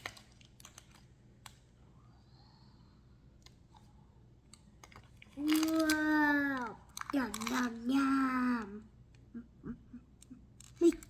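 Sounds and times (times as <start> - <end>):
plastic pieces clicking and tapping: 0.0 - 1.6, 4.5 - 7.9.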